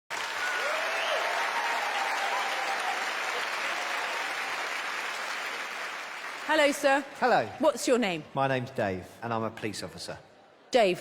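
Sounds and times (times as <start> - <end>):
audience applauding: 0.1 - 7.5.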